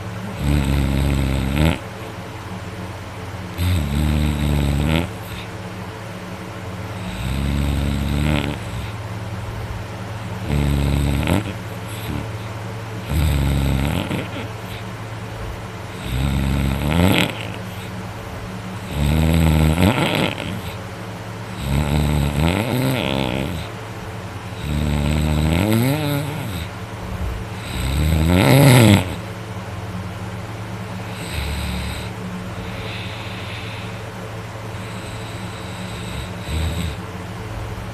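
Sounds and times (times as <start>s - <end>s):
person snoring loudly: 0.0s - 1.9s, 3.5s - 5.5s, 6.9s - 9.0s, 10.2s - 14.8s, 15.9s - 18.0s, 18.8s - 20.8s, 21.5s - 23.7s, 24.5s - 26.8s, 27.6s - 29.3s, 31.0s - 34.0s, 34.7s - 37.1s.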